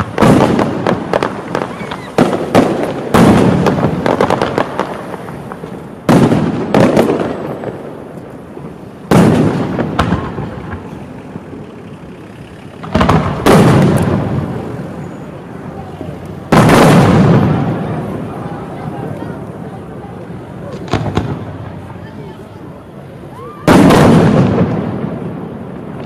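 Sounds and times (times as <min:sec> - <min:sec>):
fireworks booming with rumbling echo: 0:00.0 - 0:26.0.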